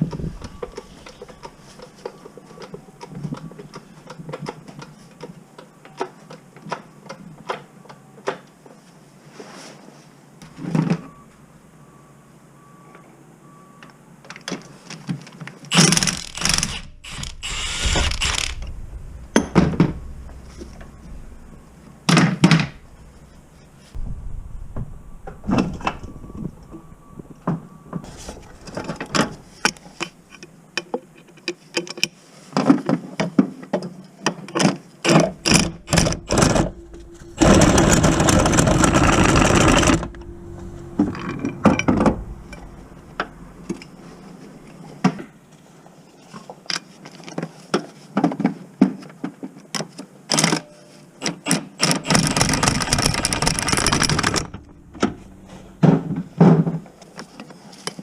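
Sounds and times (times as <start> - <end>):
ratchet clicking: 15.7 - 21.5
metal parts clanking: 15.7 - 23.8, 25.2 - 30.5, 35.0 - 44.9, 51.2 - 56.8.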